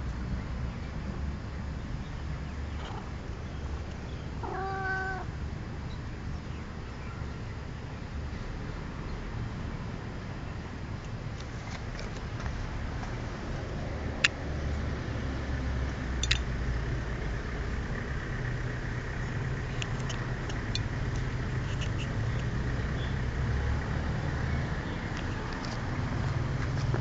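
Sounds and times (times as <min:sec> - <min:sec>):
sharp clicks: 0:19.7 - 0:22.5.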